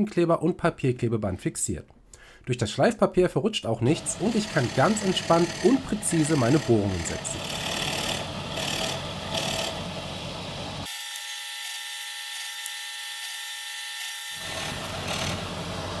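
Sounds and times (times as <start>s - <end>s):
electric drill boring into wood: 3.9s - 9.9s, 10.8s - 15.6s.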